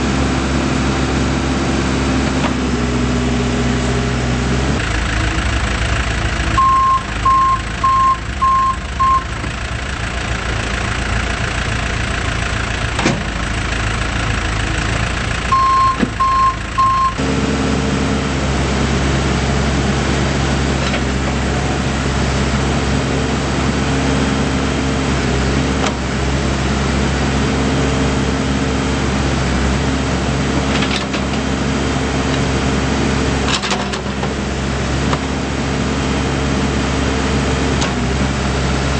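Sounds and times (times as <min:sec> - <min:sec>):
diesel engine running: 0:00.0 - 0:38.9
reverse alarm beeping: 0:06.6 - 0:09.4, 0:15.5 - 0:17.2.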